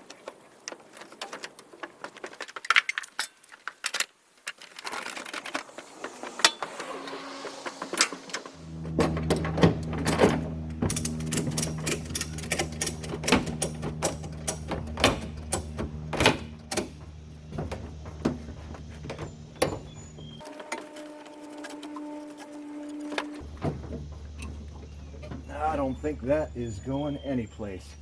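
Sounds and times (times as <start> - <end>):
steady low hum: 5.6 - 20.4, 21.2 - 28.0
ratchet strap clicking: 10.0 - 17.1.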